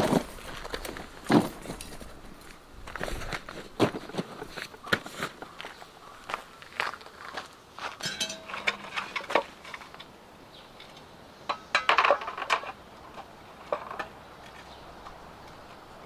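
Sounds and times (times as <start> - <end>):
short metallic ring: 8.0 - 9.0
cookware clatter: 8.0 - 9.4
cookware clinks and knocks: 8.0 - 9.4.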